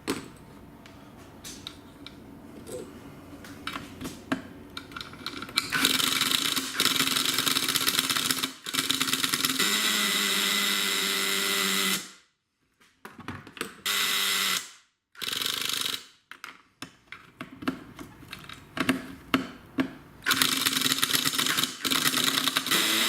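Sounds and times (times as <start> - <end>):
electric starter whirring: 20.3 - 23.0.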